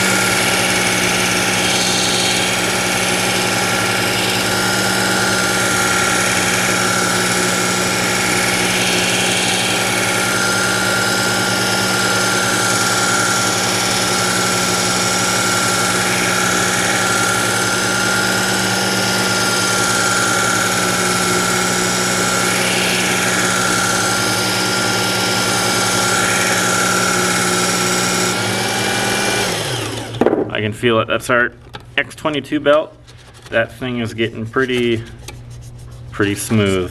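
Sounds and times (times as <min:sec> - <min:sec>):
belt sharpener motor whine: 0:00.0 - 0:30.2.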